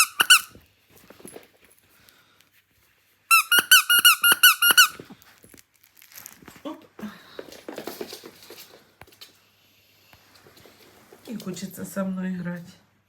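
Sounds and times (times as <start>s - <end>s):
squeaky dog toy squeaking: 0.0s - 0.6s, 3.3s - 5.0s.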